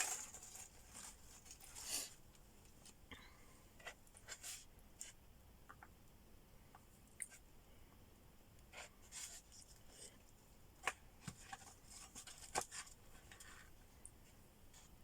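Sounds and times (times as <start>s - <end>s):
food rustling: 0.0s - 2.2s.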